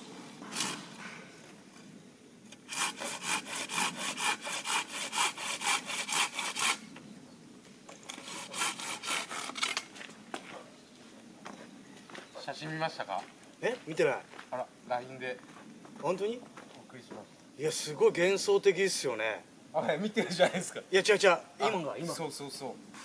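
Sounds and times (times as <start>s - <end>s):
hand saw cutting wood: 0.4s - 1.0s, 2.5s - 6.8s, 8.0s - 9.9s.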